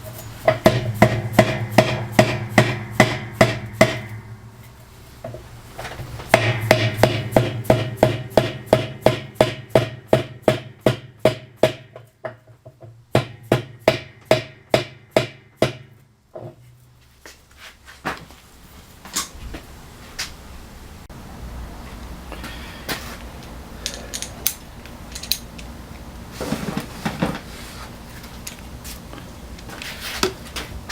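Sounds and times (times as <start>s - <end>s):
hammer striking metal wrench: 0.1s - 4.8s, 6.3s - 12.4s.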